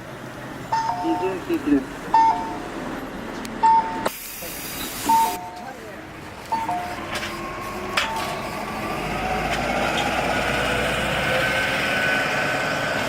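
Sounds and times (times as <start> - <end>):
bus engine pulling away: 0.0 - 13.0
bus turn signal chime: 0.7 - 2.6, 3.6 - 4.1, 5.1 - 5.8, 6.5 - 7.0.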